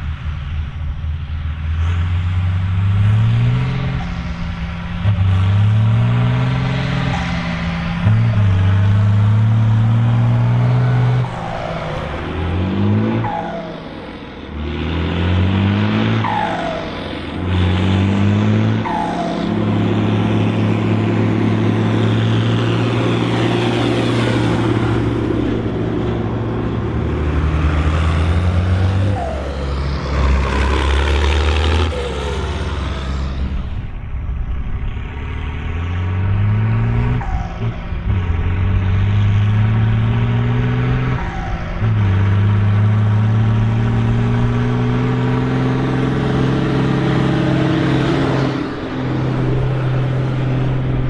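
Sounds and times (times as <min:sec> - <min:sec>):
tractor diesel engine revving: 0:00.0 - 0:51.0
turbocharger whistle: 0:16.2 - 0:17.0, 0:18.8 - 0:19.8, 0:28.8 - 0:33.0.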